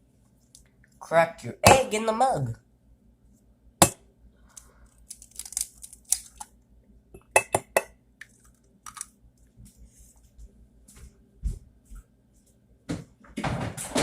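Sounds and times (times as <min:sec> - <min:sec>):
egg cracking against mug: 0:04.6 - 0:06.6, 0:07.2 - 0:09.2.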